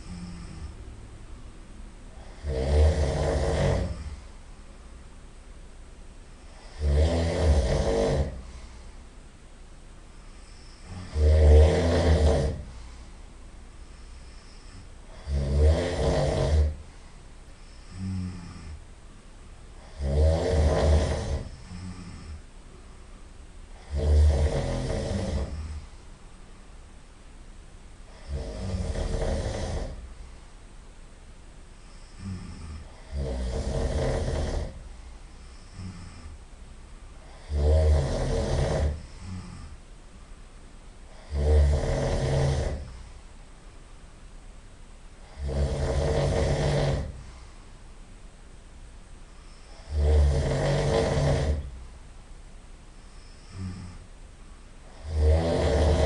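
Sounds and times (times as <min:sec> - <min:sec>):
person snoring loudly: 0:00.0 - 0:00.8, 0:02.1 - 0:04.3, 0:06.5 - 0:08.6, 0:10.3 - 0:12.8, 0:14.0 - 0:16.9, 0:17.6 - 0:18.8, 0:19.8 - 0:22.4, 0:23.8 - 0:25.9, 0:28.1 - 0:30.1, 0:31.8 - 0:36.4, 0:37.2 - 0:39.8, 0:41.1 - 0:43.0, 0:45.2 - 0:47.4, 0:49.5 - 0:51.8, 0:53.1 - 0:54.1, 0:54.8 - 0:56.0
quiet breathing: 0:00.0 - 0:05.0, 0:06.2 - 0:26.8, 0:27.8 - 0:31.0, 0:31.6 - 0:44.1, 0:44.9 - 0:48.2, 0:49.0 - 0:52.2, 0:52.8 - 0:56.0.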